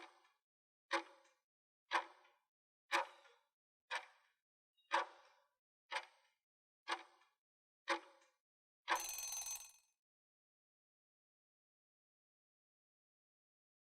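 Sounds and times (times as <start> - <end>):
clock-like ticks: 0.9 - 9.8
bell ringing: 8.9 - 9.8.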